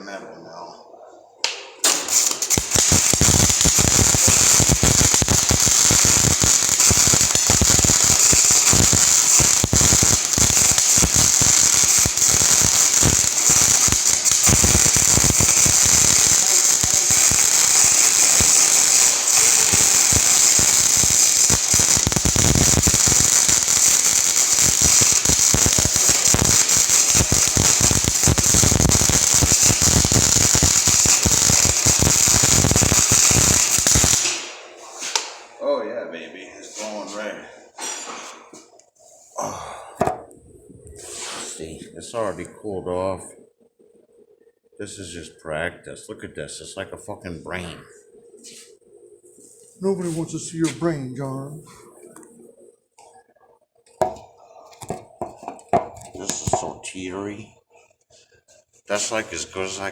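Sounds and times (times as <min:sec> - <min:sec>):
welder arc crackling: 0:01.4 - 0:35.5, 0:53.9 - 0:57.7, 0:58.8 - 0:59.9.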